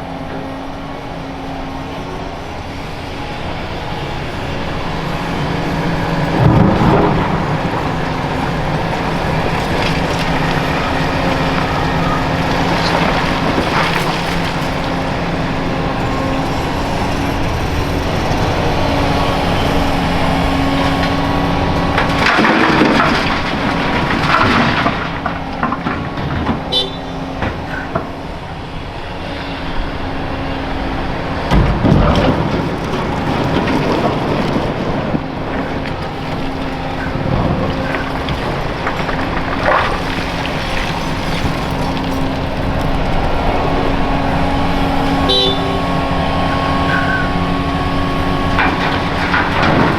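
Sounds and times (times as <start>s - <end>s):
excavator diesel engine: 0.0s - 49.9s
concrete crashing into truck bed: 6.2s - 15.6s, 21.8s - 28.1s, 31.5s - 44.0s, 45.3s - 49.9s.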